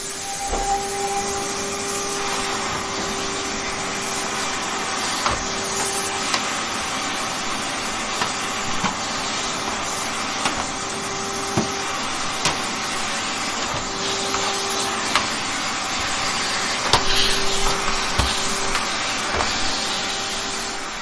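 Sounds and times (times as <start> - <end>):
vacuum cleaner running: 0.0 - 21.0.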